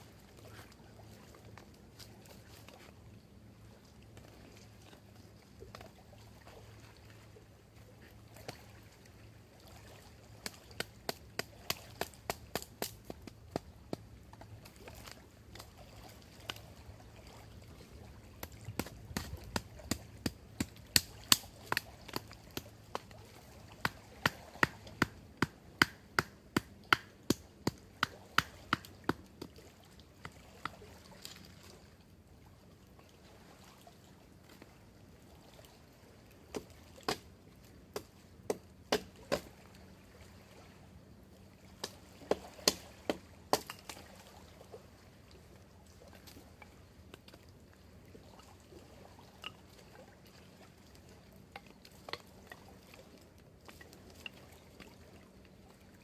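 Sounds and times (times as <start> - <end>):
wood being chopped with a knife: 10.4 - 14.1, 18.7 - 23.1, 23.8 - 29.6, 38.0 - 39.4, 42.3 - 43.8.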